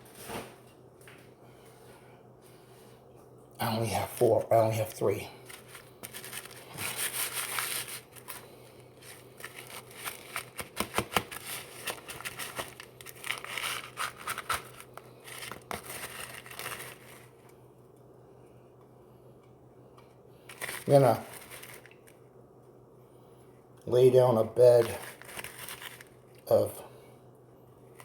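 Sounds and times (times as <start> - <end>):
plastic snack bag crinkling: 3.9 - 17.5, 20.4 - 22.2, 24.5 - 26.7.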